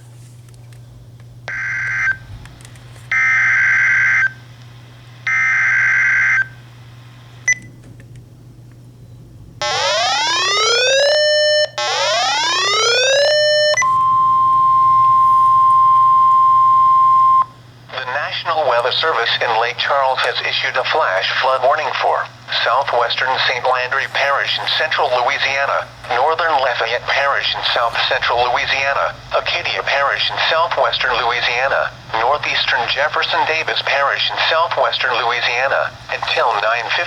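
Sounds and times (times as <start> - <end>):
steady alarm tone: 1.5 - 2.3, 3.1 - 4.4, 5.3 - 6.6, 9.6 - 37.0
rising siren-like sweeps: 9.6 - 17.5.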